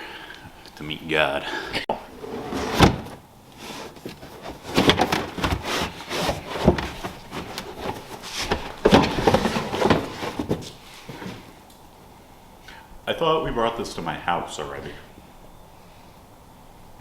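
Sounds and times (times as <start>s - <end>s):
objects knocking and clunking: 2.1s - 11.5s.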